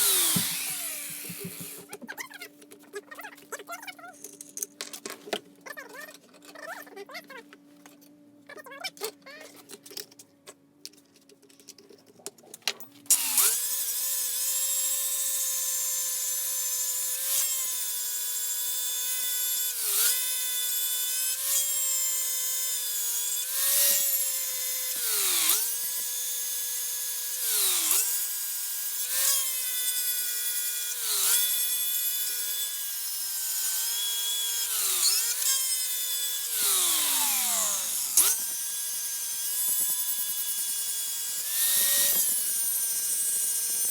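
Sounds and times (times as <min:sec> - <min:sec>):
rotary power tool whining: 0:00.0 - 0:01.9, 0:13.1 - 0:43.9.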